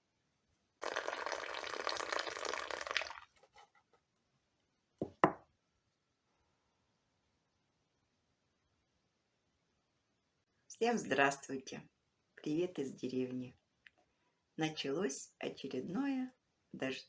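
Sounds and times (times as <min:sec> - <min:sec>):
water pouring: 0:00.8 - 0:03.6.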